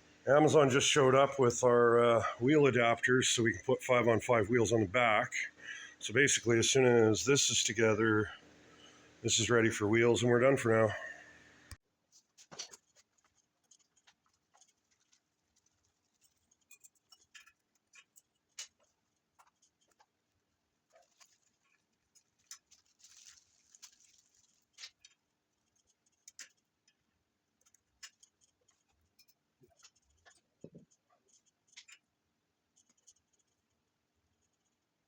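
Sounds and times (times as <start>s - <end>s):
faint steady hum: 0.0s - 11.8s
faint clicks and taps: 23.8s - 32.1s.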